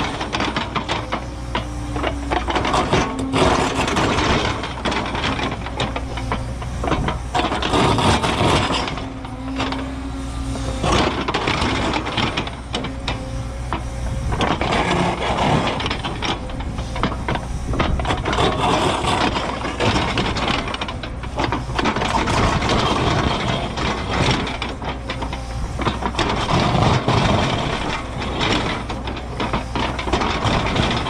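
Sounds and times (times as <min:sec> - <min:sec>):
excavator diesel engine under load: 0:00.0 - 0:31.0
rock cracking and scraping: 0:14.4 - 0:31.0.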